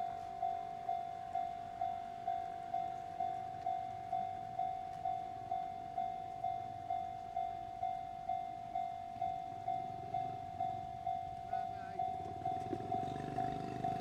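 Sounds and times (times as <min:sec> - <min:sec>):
level crossing warning bell: 0:00.0 - 0:14.0.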